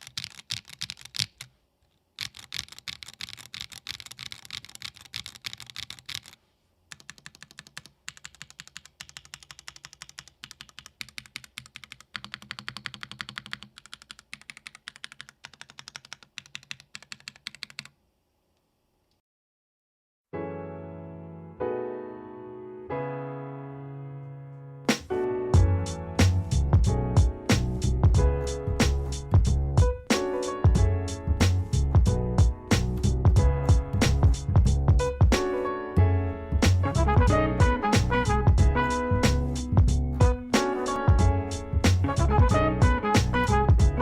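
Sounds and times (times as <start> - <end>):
mechanical keyboard keystroke clacks: 0.0 - 1.5, 2.2 - 17.9.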